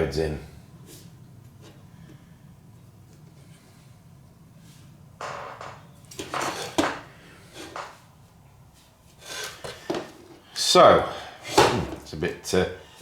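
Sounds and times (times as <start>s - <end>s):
low steady hum: 0.0s - 13.0s
metal objects clattering: 5.6s - 7.9s.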